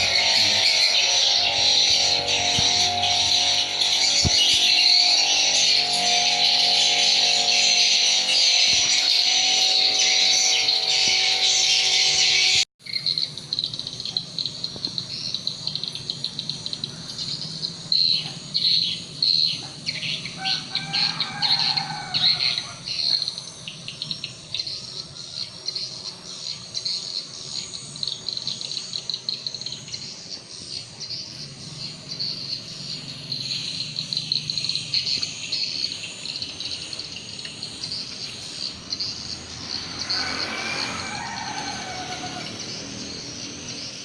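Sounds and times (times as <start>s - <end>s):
swiftlets twittering: 0.0s - 16.9s.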